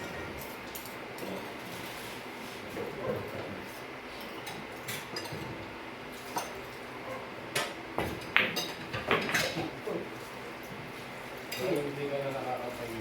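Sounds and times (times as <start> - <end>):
billiard balls clacking: 7.6 - 9.9.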